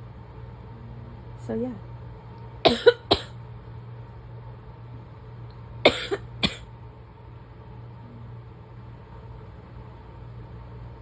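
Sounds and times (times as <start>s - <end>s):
person coughing: 2.7s - 3.4s, 5.9s - 6.7s.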